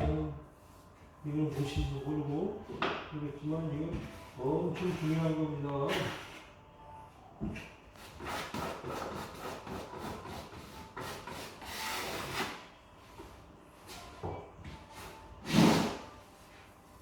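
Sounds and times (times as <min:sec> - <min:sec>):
hand tool scraping floorboards: 0:15.4 - 0:16.1.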